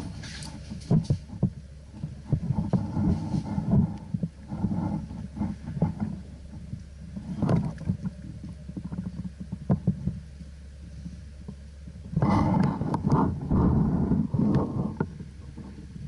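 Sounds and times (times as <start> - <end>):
camera handling rumble: 0.0 - 16.0
rush of noise: 12.2 - 15.8.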